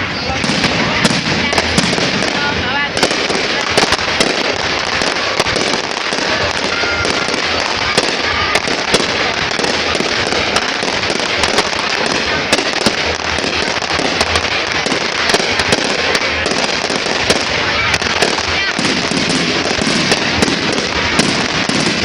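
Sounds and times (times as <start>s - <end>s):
fireworks crackling and popping: 0.0s - 22.0s.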